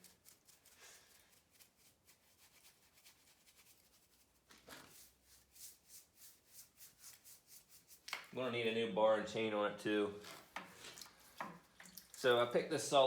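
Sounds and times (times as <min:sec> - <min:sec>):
brush scrubbing plastic: 0:00.0 - 0:08.4.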